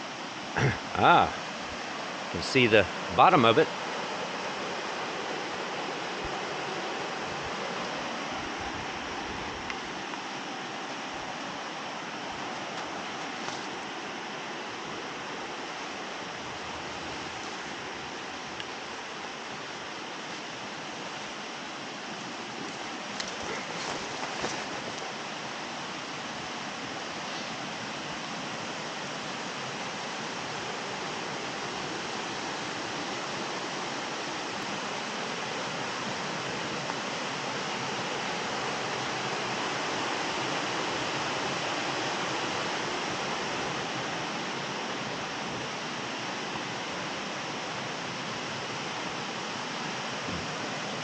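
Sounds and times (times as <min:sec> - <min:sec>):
waterfall rushing: 0:00.0 - 0:51.0.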